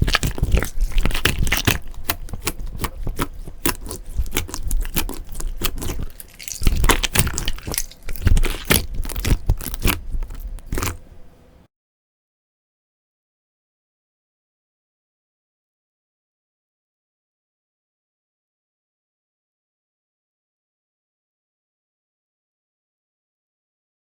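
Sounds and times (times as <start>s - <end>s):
slime crackling and popping: 0.0s - 11.0s.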